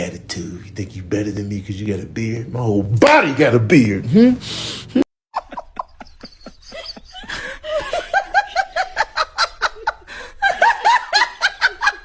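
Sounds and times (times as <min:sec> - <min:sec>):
person laughing hard: 0:05.4 - 0:12.0.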